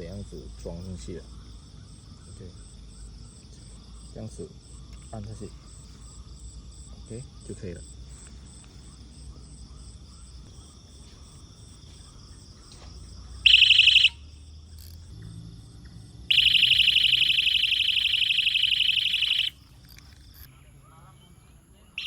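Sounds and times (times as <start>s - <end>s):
pulsing electronic buzzer: 13.5s - 14.9s, 16.3s - 19.6s.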